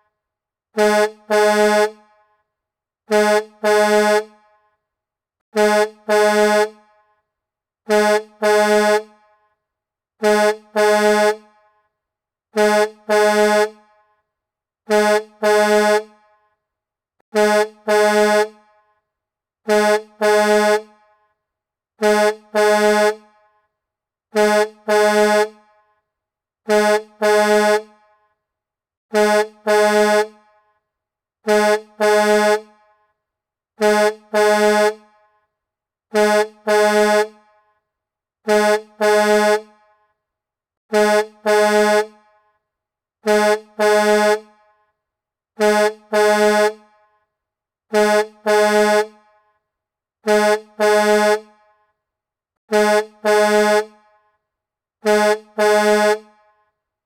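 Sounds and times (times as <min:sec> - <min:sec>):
truck air horn blasts: 0:00.8 - 0:02.1, 0:03.1 - 0:04.4, 0:05.5 - 0:06.9, 0:07.9 - 0:09.3, 0:10.2 - 0:11.6, 0:12.5 - 0:13.9, 0:14.9 - 0:16.3, 0:17.3 - 0:18.8, 0:19.6 - 0:21.1, 0:22.0 - 0:23.4, 0:24.3 - 0:25.7, 0:26.6 - 0:28.1, 0:29.1 - 0:30.4, 0:31.4 - 0:32.8, 0:33.8 - 0:35.2, 0:36.1 - 0:37.4, 0:38.4 - 0:39.9, 0:40.9 - 0:42.3, 0:43.2 - 0:44.6, 0:45.6 - 0:46.9, 0:47.9 - 0:49.2, 0:50.2 - 0:51.6, 0:52.7 - 0:54.0, 0:55.0 - 0:56.4.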